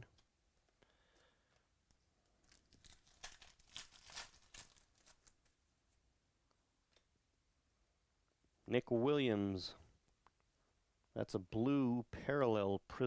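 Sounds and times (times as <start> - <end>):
card pack wrapper tearing: 2.4 - 5.5.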